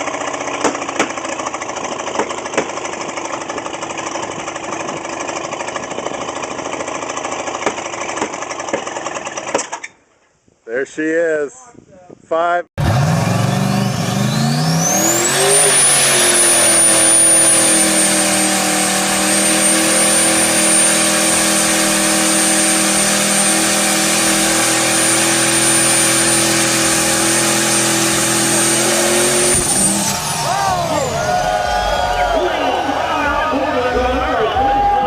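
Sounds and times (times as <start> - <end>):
car engine revving: 12.8 - 35.0.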